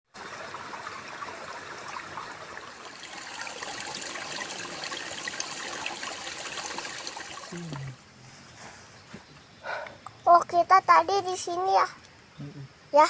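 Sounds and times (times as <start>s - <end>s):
water running and trickling: 0.1s - 8.0s.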